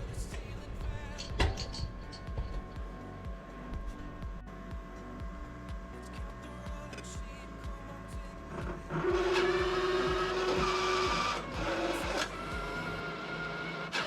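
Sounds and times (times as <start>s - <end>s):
background music with steady beat: 0.0s - 14.0s
slot machine motors whirring: 8.5s - 14.0s.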